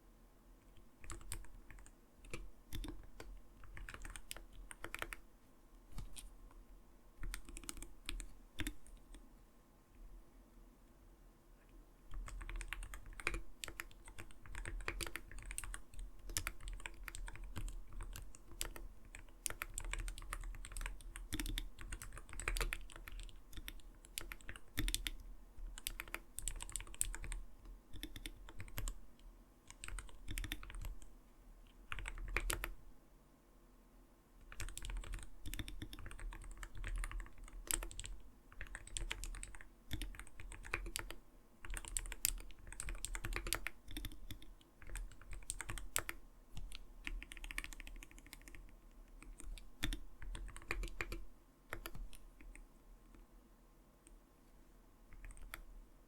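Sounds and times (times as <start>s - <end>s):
fast keyboard typing: 0.9s - 5.2s, 5.9s - 6.3s, 7.2s - 9.2s, 12.1s - 29.0s, 29.7s - 31.1s, 31.9s - 32.8s, 34.4s - 52.6s, 55.1s - 55.7s.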